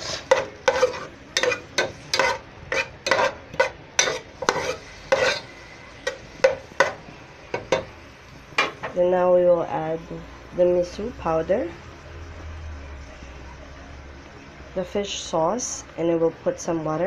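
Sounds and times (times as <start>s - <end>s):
utensil scraping a frying pan: 0.0s - 7.1s
oil sizzling: 0.0s - 12.7s.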